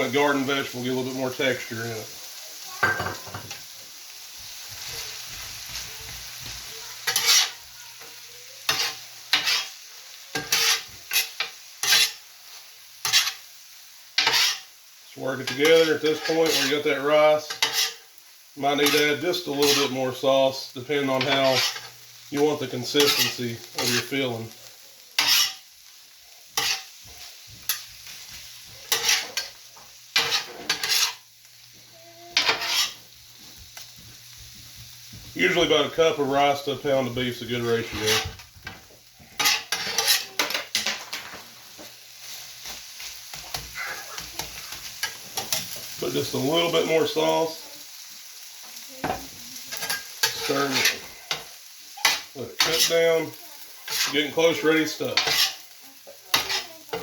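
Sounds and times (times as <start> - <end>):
food sizzling on a griddle: 0.0 - 57.0
utensil scraping a griddle: 4.7 - 13.4, 14.2 - 14.7, 15.3 - 24.5, 25.2 - 25.7, 26.5 - 31.3, 32.2 - 33.9, 35.4 - 47.2, 49.0 - 57.0.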